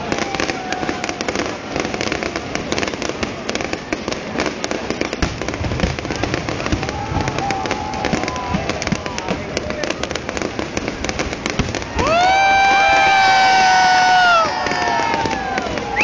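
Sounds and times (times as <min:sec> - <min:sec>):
deep fireworks booms: 0:00.0 - 0:16.0
fireworks crackling and popping: 0:00.0 - 0:16.0
wavering firework whistle: 0:11.6 - 0:16.0.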